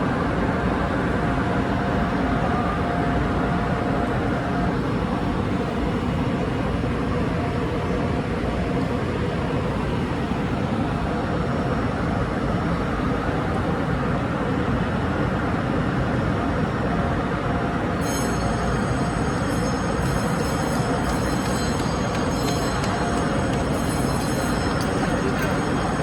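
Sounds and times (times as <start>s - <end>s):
electric train rumbling: 0.0s - 26.0s
high-pitched steady tones: 18.0s - 26.0s.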